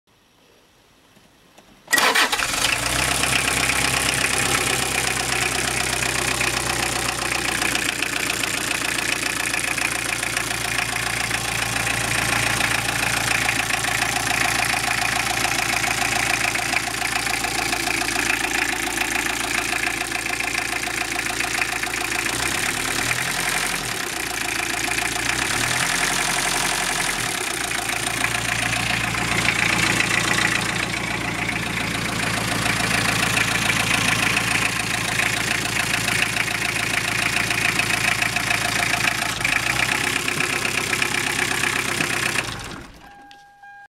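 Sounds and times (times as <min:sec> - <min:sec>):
diesel engine idling with knock: 0:03.1 - 0:43.4.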